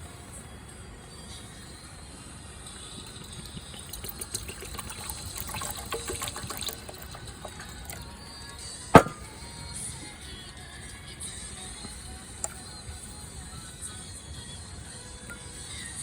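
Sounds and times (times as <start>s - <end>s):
background music: 0.0s - 16.0s
loud sharp knock: 9.0s - 9.4s.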